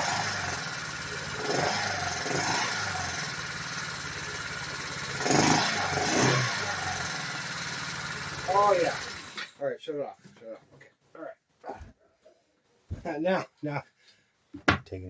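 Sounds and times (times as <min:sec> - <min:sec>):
scooter engine idling and revving: 0:00.0 - 0:09.5.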